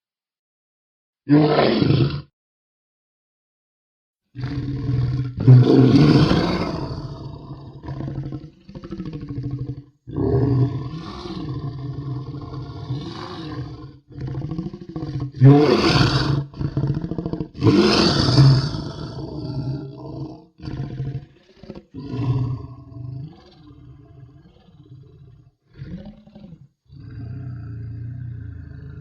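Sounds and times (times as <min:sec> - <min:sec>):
crocodilian bellowing: 0:04.4 - 0:25.0.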